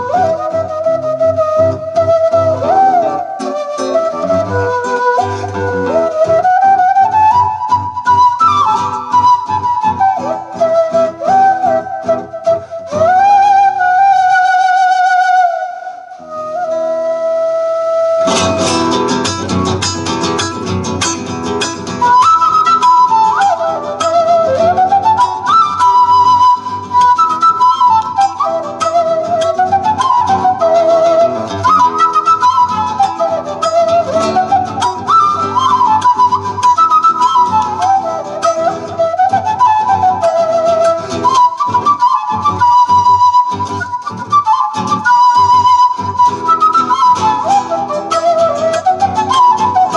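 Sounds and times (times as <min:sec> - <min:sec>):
strummed acoustic guitar: 0:00.0 - 0:13.4, 0:18.2 - 0:49.9
flute melody: 0:00.0 - 0:49.9.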